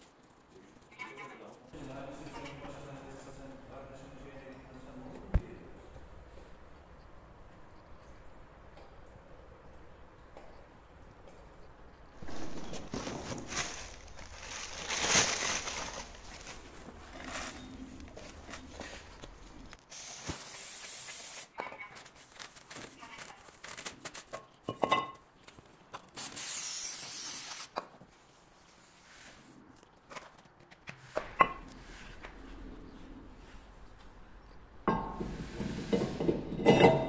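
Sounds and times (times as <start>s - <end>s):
air spray hissing: 19.9s - 21.5s, 26.2s - 27.7s.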